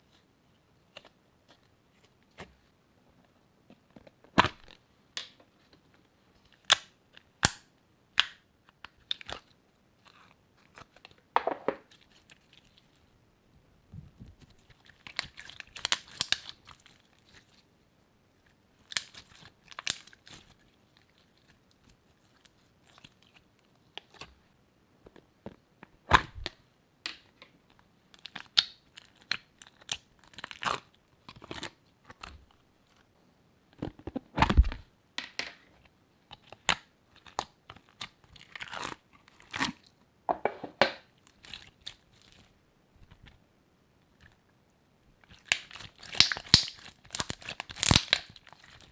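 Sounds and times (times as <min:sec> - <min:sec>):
crunchy slime crackling and popping: 0:14.6 - 0:17.5, 0:18.8 - 0:23.4, 0:28.2 - 0:33.0, 0:45.2 - 0:48.9.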